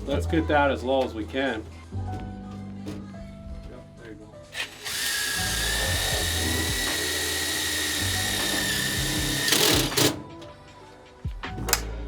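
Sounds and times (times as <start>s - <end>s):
power drill whining: 4.6s - 10.2s.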